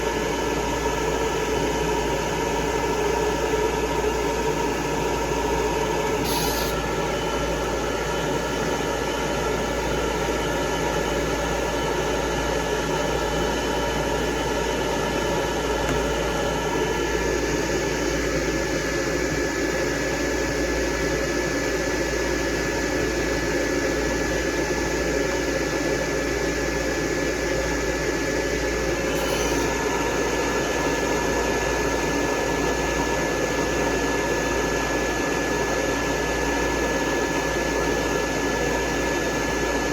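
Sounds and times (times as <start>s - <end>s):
electric dryer blowing air: 0.0s - 11.3s, 28.1s - 35.2s.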